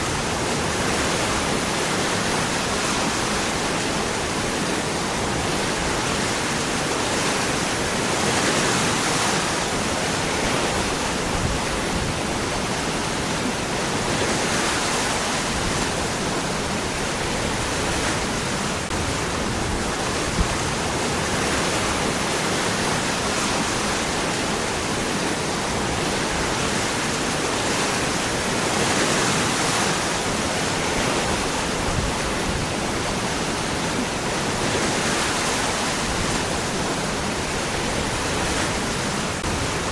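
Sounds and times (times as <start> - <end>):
water rushing between rocks: 0.0 - 39.9.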